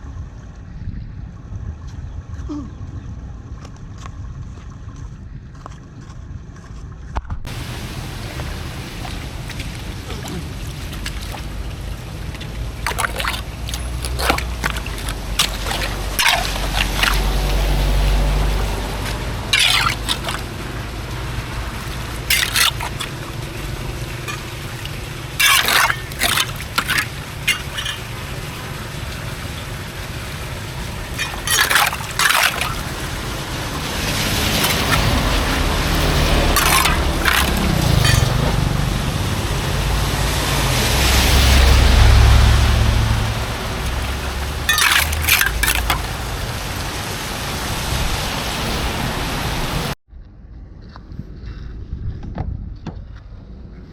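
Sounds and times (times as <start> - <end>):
water trickling and splashing: 7.5 - 50.0.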